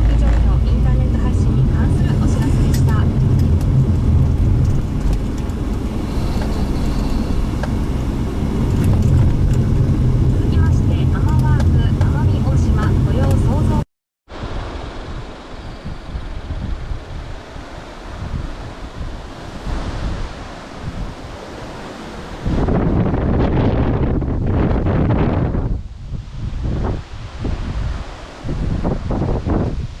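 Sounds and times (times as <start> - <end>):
car engine and tyres rumbling: 0.0 - 13.8
gusty wind buffeting microphone: 0.0 - 30.0.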